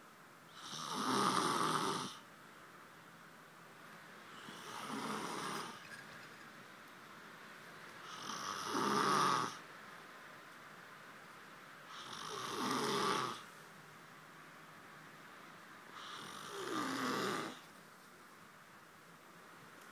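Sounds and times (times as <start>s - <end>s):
man snoring: 0.5s - 2.2s, 4.4s - 5.8s, 8.0s - 9.6s, 11.9s - 13.5s, 16.0s - 17.6s.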